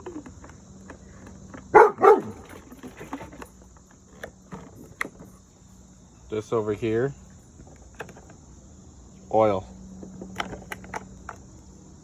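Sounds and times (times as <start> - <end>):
dog barking: 1.7 - 2.5.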